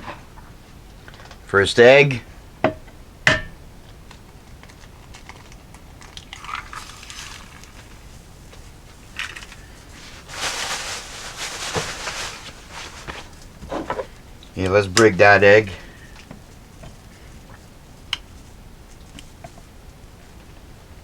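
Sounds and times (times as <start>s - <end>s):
egg crackling and hissing: 4.7s - 14.4s.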